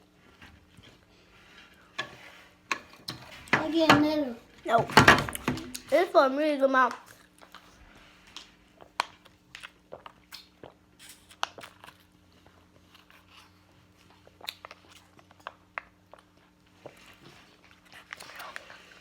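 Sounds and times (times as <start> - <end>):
person chewing and crunching: 8.7 - 19.0.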